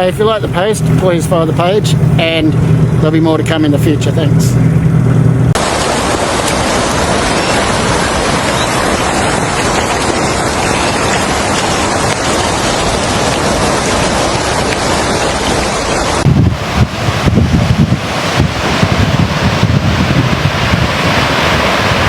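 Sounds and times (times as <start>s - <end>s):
water rushing: 0.0s - 22.0s.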